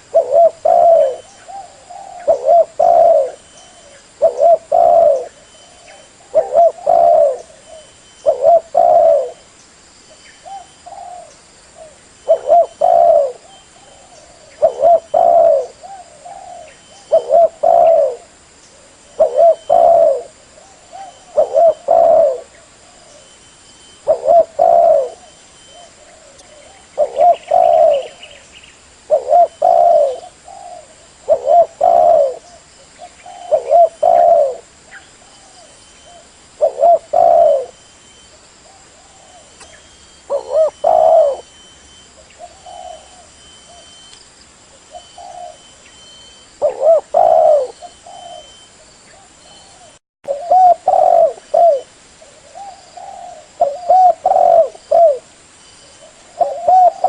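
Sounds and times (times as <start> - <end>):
dove cooing: 0.0 - 9.4, 10.4 - 28.4, 29.0 - 44.1, 44.8 - 57.0.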